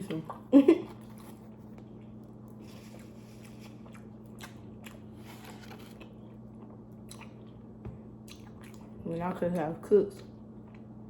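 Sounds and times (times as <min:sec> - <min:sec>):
steady low hum: 0:00.0 - 0:11.0
person chewing: 0:00.3 - 0:09.0.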